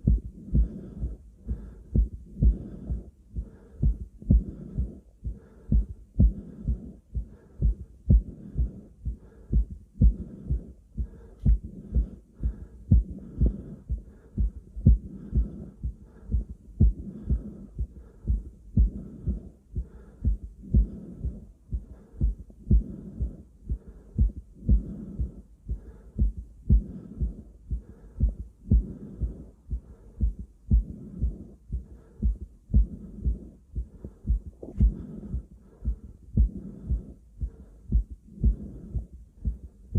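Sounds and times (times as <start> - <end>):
heartbeat through stethoscope: 0.0 - 39.9.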